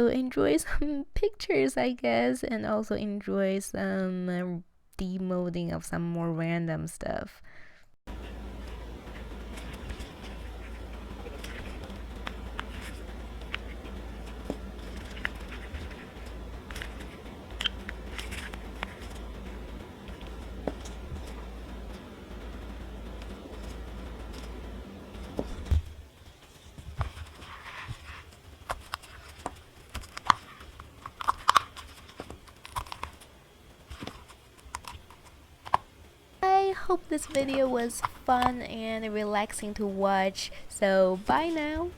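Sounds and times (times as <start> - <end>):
resin peeling from silicone mold: 8.1 - 35.9
low steady hum: 8.1 - 41.9
silicone mold tearing snaps: 30.0 - 33.2.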